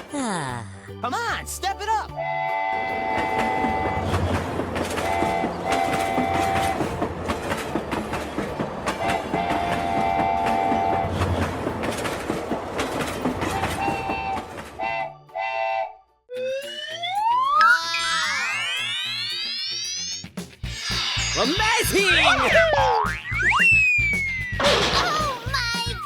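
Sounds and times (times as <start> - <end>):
train horn blasts: 2.2 - 7.0, 9.0 - 11.3, 13.4 - 16.0
train wheels clickety-clack: 3.0 - 14.8.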